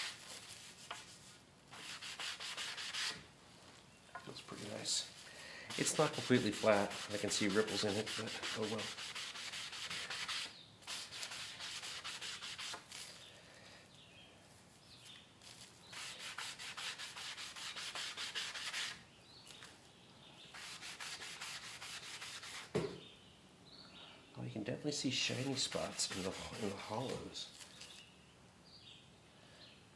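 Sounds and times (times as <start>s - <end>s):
sandpaper rubbing on epoxy: 0.0s - 3.2s, 4.9s - 13.2s, 15.9s - 19.0s, 20.5s - 22.7s, 25.3s - 27.9s.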